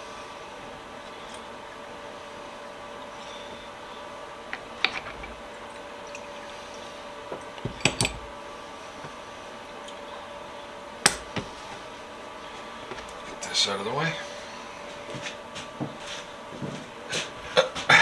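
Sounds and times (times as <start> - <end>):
steady low hum: 0.0 - 18.0
metal parts clinking: 4.5 - 5.5, 7.6 - 8.4.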